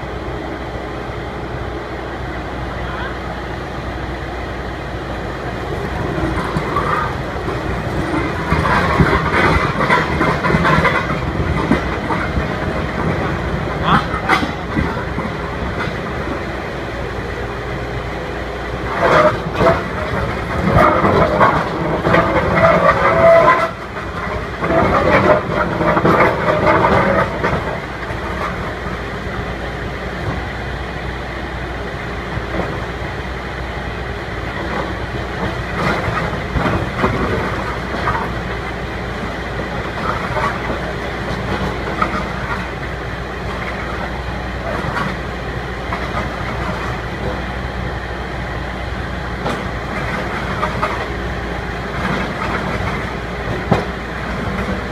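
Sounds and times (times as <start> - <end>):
steady engine drone: 0.0 - 54.9
clattering and grinding metal: 6.0 - 16.5, 18.8 - 29.1, 34.6 - 45.2.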